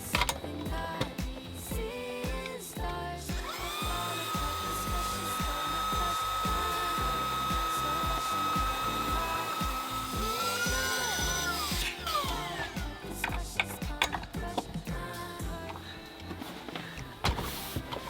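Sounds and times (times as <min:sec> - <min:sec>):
background music with beat: 0:00.0 - 0:18.0
small electric motor whining: 0:03.4 - 0:13.1.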